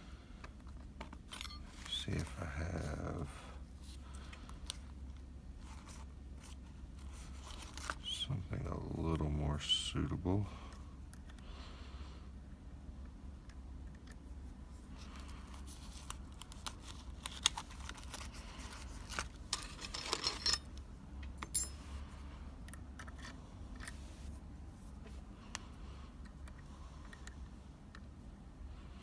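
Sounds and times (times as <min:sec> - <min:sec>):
metal lockpicking tools rattling: 0:19.5 - 0:20.7, 0:21.4 - 0:21.8.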